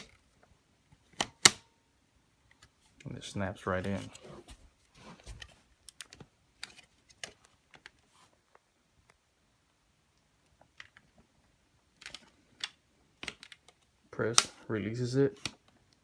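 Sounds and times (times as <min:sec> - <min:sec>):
plastic vacuum parts clicking: 0:01.1 - 0:01.7, 0:11.9 - 0:14.6, 0:15.3 - 0:15.8.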